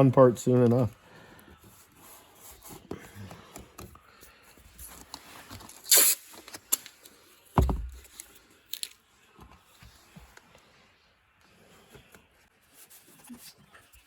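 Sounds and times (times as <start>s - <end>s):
tape ripping hiss: 5.6s - 7.2s
dull thump: 7.6s - 8.0s.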